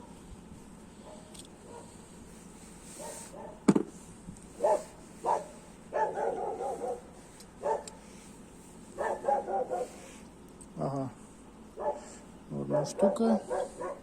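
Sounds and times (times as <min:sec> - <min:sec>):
dog barking: 0:01.0 - 0:01.9, 0:03.0 - 0:03.6, 0:04.6 - 0:08.0, 0:09.0 - 0:10.0, 0:11.8 - 0:14.0.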